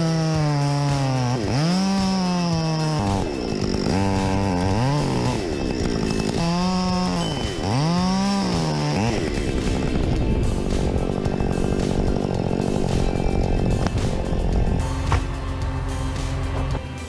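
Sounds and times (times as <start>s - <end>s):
chainsaw revving: 0.0s - 17.0s.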